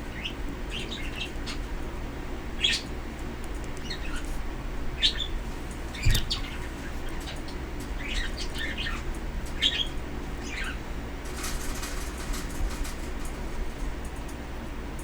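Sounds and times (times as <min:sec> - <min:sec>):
bird chirping: 0:05.9 - 0:09.0.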